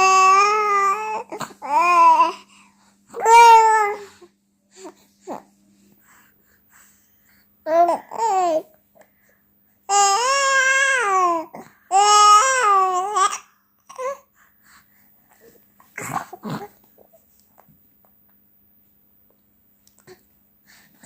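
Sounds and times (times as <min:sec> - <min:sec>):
baby wailing: 0:00.0 - 0:02.3, 0:03.2 - 0:04.0, 0:09.9 - 0:14.2.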